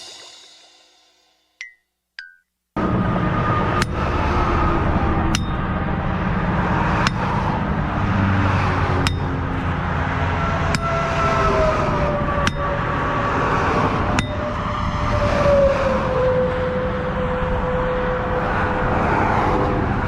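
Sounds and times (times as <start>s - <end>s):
traffic: 2.8s - 20.0s
wind noise: 2.8s - 20.0s
sledgehammer clanging on steel post: 5.3s - 5.7s, 7.0s - 7.4s, 9.0s - 9.4s, 12.4s - 12.8s, 14.2s - 14.5s.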